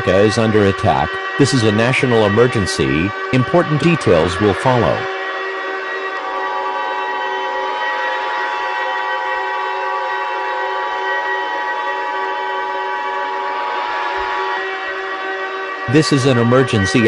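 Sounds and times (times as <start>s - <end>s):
steady droning tones: 0.0s - 17.0s.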